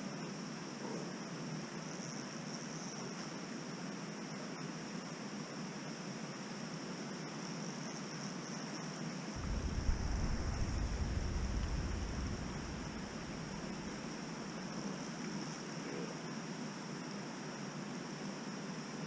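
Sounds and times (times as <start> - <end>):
low rumble: 9.4 - 14.7
outdoor hiss: 9.4 - 15.4.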